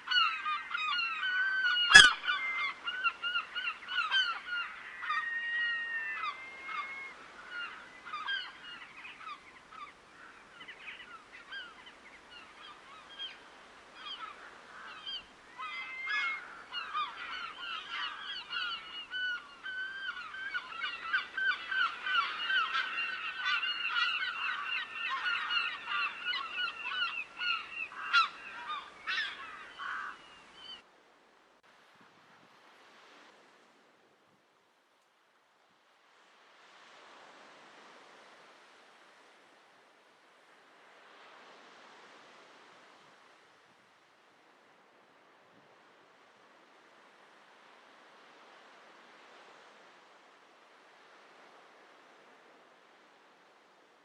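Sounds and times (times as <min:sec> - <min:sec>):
flock of waterbirds calling: 0:00.0 - 0:30.8.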